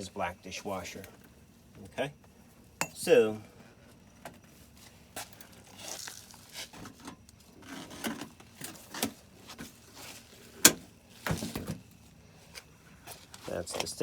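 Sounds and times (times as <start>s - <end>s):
handling scrapes and rustles: 4.7s - 11.7s, 12.4s - 13.9s.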